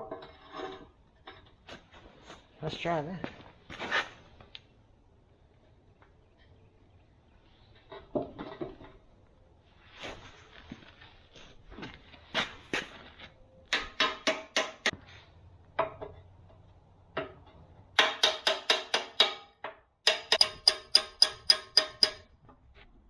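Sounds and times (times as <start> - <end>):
hammer striking steel: 13.7 - 15.0, 18.0 - 22.3.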